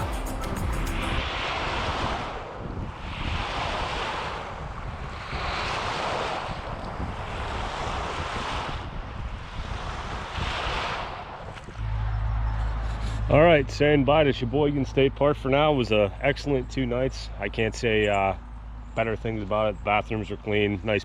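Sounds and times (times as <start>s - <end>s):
wind on microphone: 0.0s - 13.3s
waves washing onto beach: 1.1s - 11.7s.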